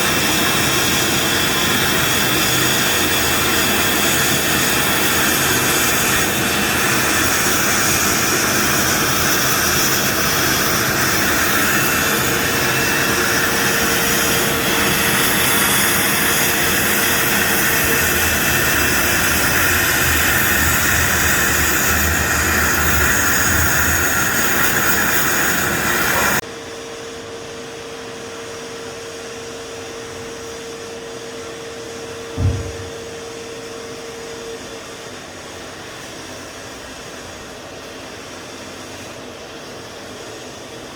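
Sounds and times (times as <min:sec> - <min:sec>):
sandblasting compressed air hiss: 0:00.0 - 0:26.4
machine hum with held tone: 0:00.0 - 0:28.4
short thump: 0:32.4 - 0:33.1.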